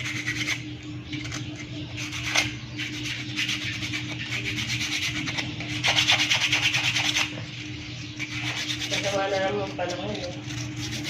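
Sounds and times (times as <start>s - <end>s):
rhythmic rasping scrape: 0.0s - 11.0s
steady low hum: 0.0s - 11.0s.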